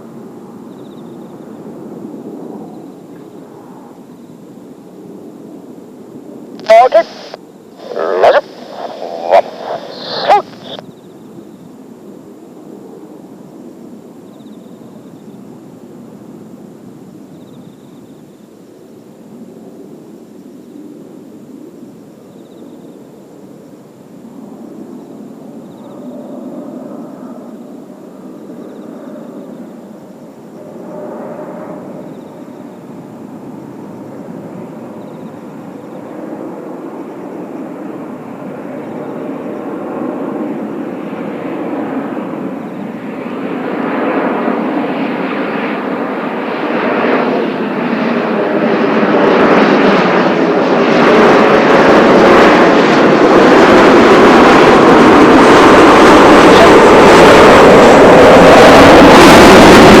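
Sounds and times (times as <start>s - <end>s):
jet aircraft noise: 0.0s - 60.0s.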